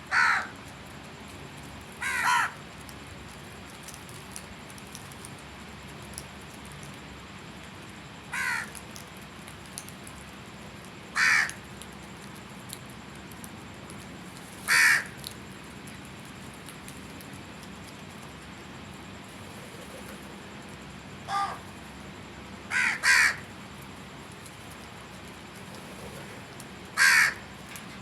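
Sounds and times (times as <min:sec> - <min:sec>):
crow cawing: 0:00.1 - 0:00.6, 0:02.0 - 0:02.6, 0:08.3 - 0:08.8, 0:11.2 - 0:11.6, 0:14.6 - 0:15.2, 0:21.3 - 0:21.7, 0:22.7 - 0:23.5, 0:26.9 - 0:27.5.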